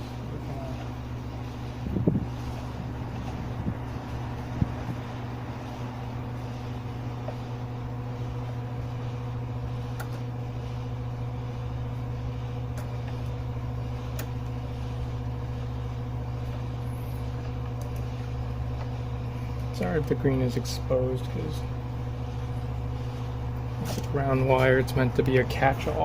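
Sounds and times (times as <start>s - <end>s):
low machine hum: 0.0s - 26.0s.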